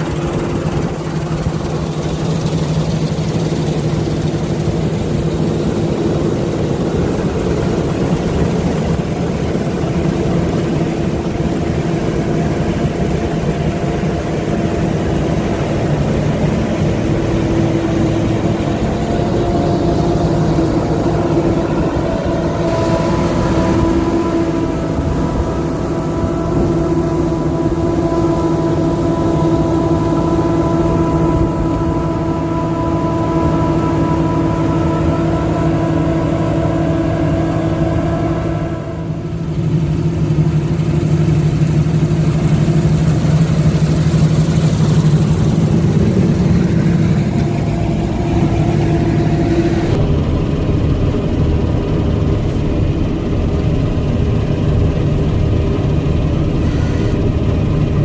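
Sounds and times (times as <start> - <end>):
combine harvester engine drone: 0.0 - 58.0
whining machinery tones: 0.0 - 58.0.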